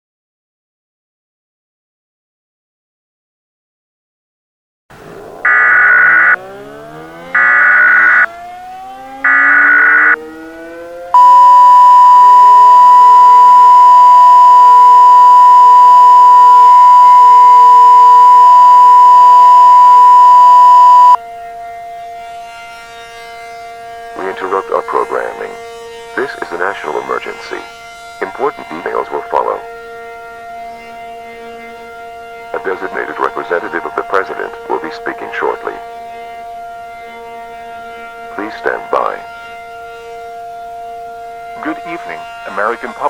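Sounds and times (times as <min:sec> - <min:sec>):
steady attention tone: 0:05.0 - 0:08.3, 0:09.2 - 0:10.2, 0:11.2 - 0:21.2
wailing tone: 0:05.0 - 0:43.0
digital data bursts: 0:05.4 - 0:06.4, 0:07.4 - 0:08.3, 0:09.3 - 0:10.2, 0:11.2 - 0:21.2.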